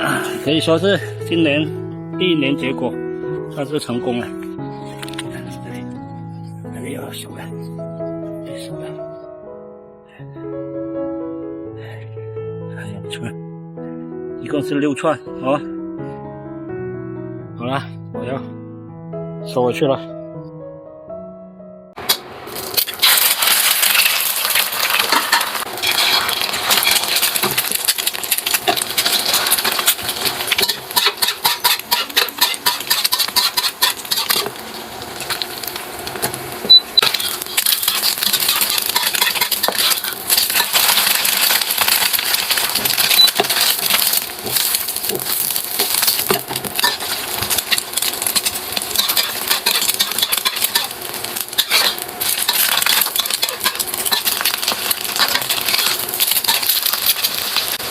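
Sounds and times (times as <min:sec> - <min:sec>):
clicking and rattling of small objects: 0:22.8 - 0:34.5, 0:37.0 - 0:57.8.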